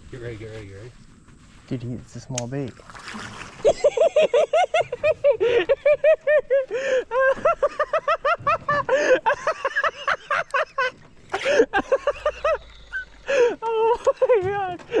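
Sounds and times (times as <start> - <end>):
man laughing hard: 3.6 - 15.0
gasping breaths: 6.7 - 7.2, 12.7 - 13.8.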